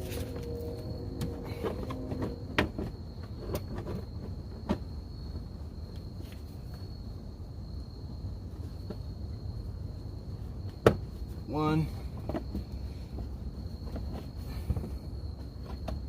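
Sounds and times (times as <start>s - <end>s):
low hum: 0.0s - 7.5s.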